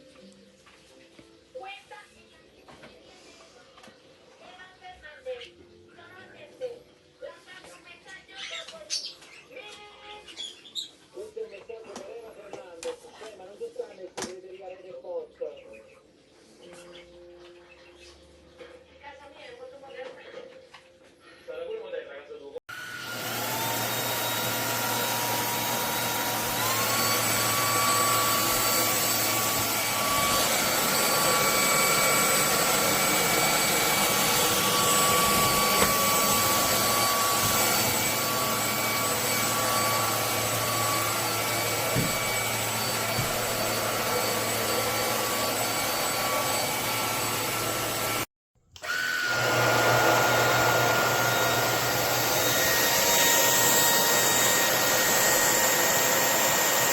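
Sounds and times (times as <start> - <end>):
vacuum motor whining: 22.7 - 56.9.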